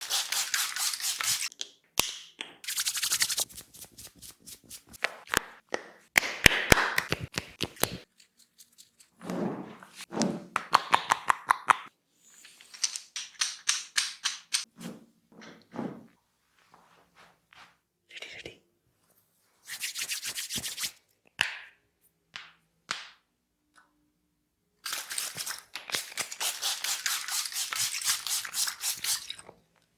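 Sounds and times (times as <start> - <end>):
hands tapping on head: 5.0 - 8.0, 10.6 - 11.9.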